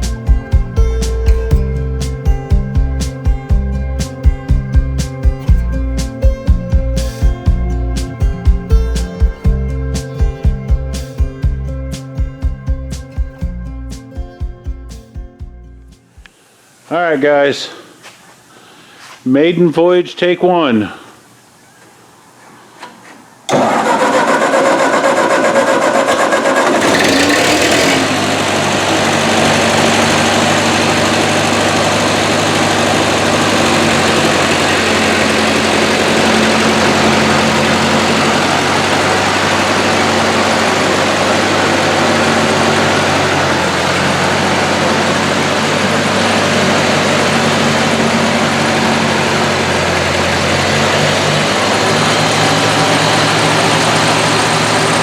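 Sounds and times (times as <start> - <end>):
tractor engine starting and running: 0.0 - 16.0, 22.8 - 55.0.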